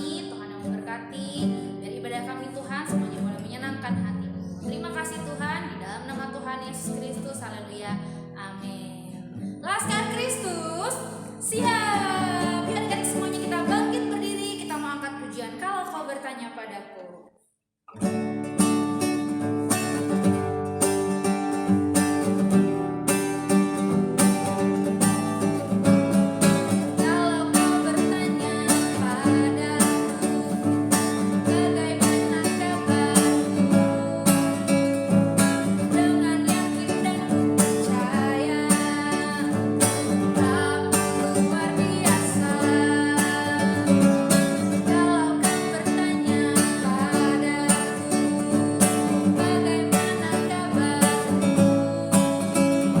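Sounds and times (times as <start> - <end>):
acoustic guitar strumming: 9.2 - 15.2, 17.9 - 53.0.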